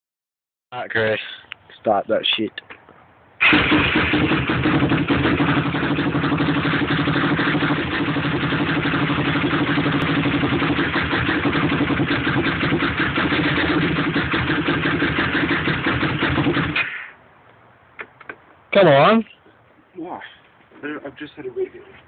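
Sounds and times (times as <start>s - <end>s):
quad engine idling: 3.4s - 17.0s.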